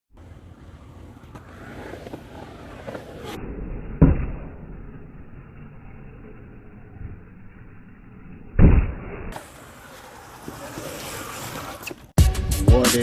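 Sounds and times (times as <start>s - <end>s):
skateboard rolling on pavement: 0.1s - 8.4s, 9.3s - 12.2s
skateboard slap: 0.5s - 4.8s.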